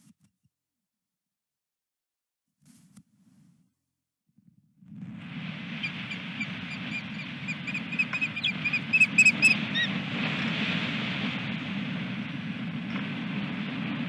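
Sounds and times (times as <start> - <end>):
wind buffeting microphone: 4.8 - 14.0
osprey whistled chirps: 5.7 - 10.0.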